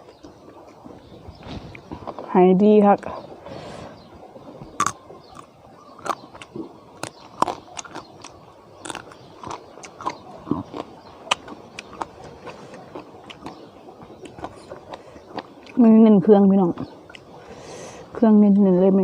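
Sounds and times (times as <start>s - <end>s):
person chewing crunchy food: 4.8s - 15.8s.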